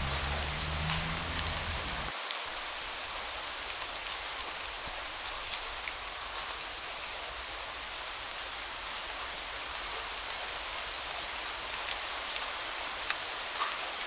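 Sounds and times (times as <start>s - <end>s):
raindrop ticks: 0.0s - 2.1s
steady rain hiss: 0.0s - 14.0s.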